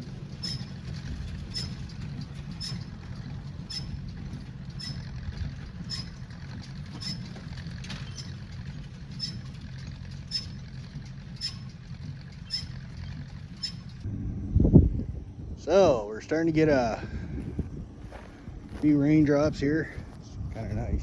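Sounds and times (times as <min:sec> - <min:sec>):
baler metallic clack: 0:00.0 - 0:14.1
tractor engine running: 0:00.0 - 0:21.0.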